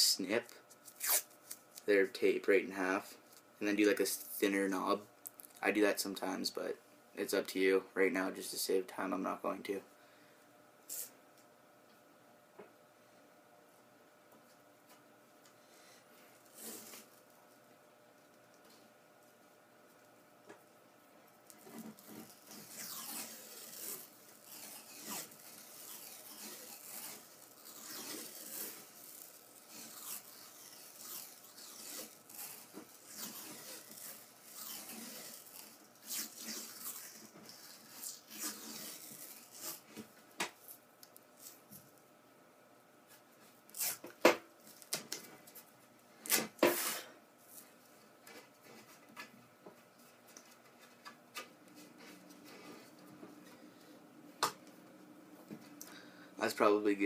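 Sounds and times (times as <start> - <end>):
cloth tape ripping: 0.8 - 1.8, 16.4 - 17.4, 21.4 - 41.6, 43.7 - 45.2, 46.2 - 47.6.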